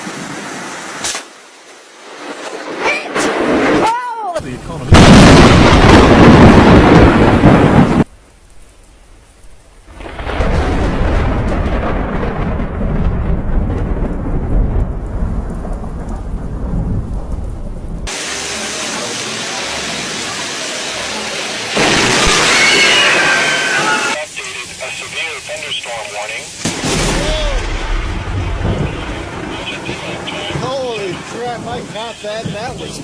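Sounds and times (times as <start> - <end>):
steady rain hiss: 0.0 - 33.0
deep rolling thunder rumble: 4.9 - 8.1, 9.9 - 18.1, 26.7 - 33.0
loud thunder clap: 4.9 - 8.1, 9.9 - 18.2, 26.6 - 33.0.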